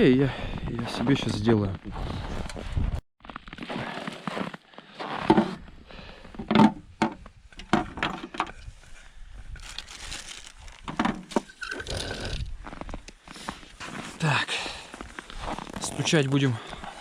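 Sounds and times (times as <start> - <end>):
crunching and crackling handling: 9.5 - 17.0.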